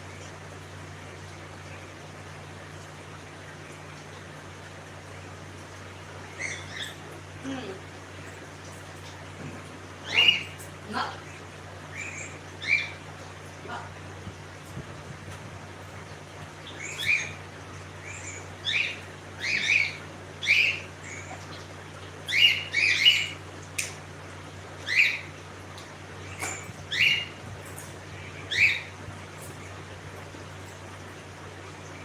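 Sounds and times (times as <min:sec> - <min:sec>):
steady low hum: 0:00.0 - 0:32.0.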